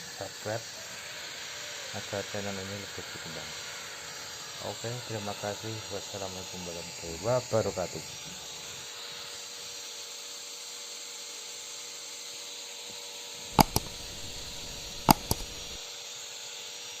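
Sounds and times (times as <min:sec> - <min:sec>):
sharp clicks: 0:13.6 - 0:15.8.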